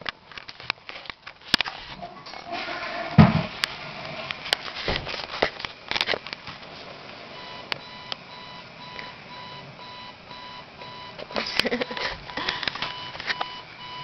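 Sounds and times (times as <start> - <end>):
knocks and bumps: 2.2 - 3.6
dull thump: 3.1 - 3.6, 4.8 - 5.2
electronic alarm beeping: 7.4 - 14.0.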